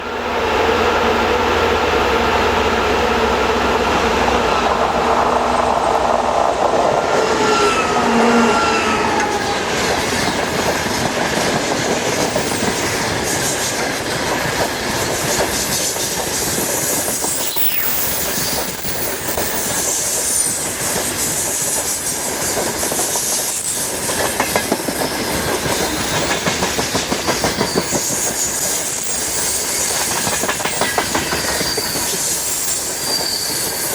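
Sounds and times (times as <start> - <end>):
diesel locomotive engine drone: 0.0 - 33.2
train wagons clattering over rail joints: 22.4 - 33.9.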